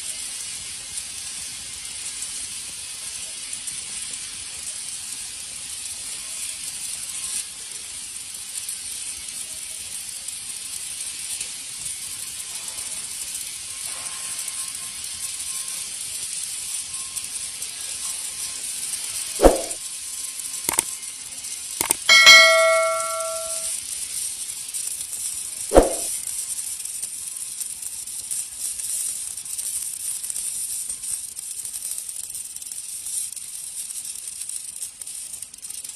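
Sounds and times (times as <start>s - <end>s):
metallic clang: 19.4s - 19.8s, 21.8s - 23.7s, 25.7s - 26.1s.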